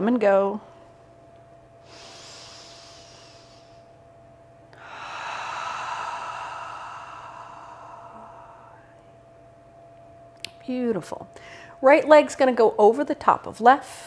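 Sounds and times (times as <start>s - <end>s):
woman breathing deeply: 1.8s - 4.0s, 4.7s - 9.3s, 11.3s - 11.8s.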